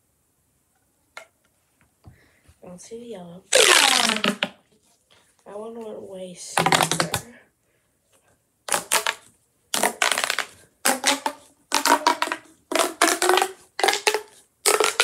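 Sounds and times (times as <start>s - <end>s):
pop tube toy crackling: 3.5s - 4.6s, 6.6s - 7.3s, 8.7s - 15.0s.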